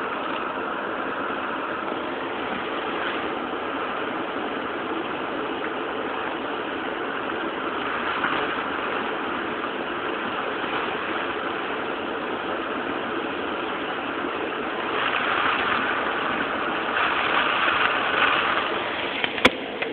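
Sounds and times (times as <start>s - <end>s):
rain: 0.0s - 19.9s
storm wind: 0.0s - 19.9s.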